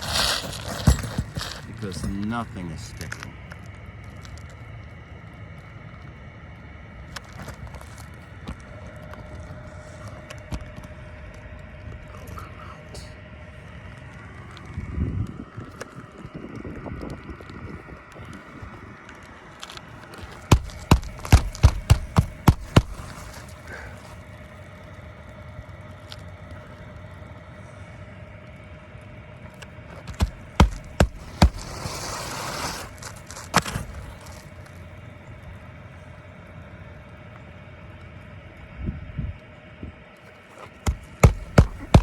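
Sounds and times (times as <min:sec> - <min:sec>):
hammer striking roof shingles: 0:20.2 - 0:23.9, 0:29.9 - 0:34.5, 0:40.6 - 0:42.0.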